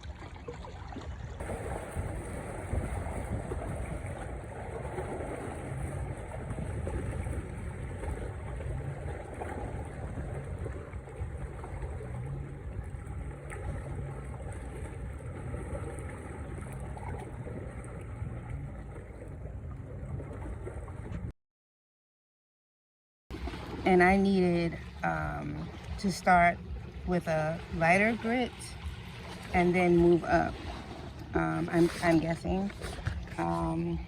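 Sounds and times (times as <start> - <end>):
lakeside water: 0.0 - 21.3, 23.3 - 34.0
wind noise on microphone: 0.0 - 21.3, 28.8 - 34.0.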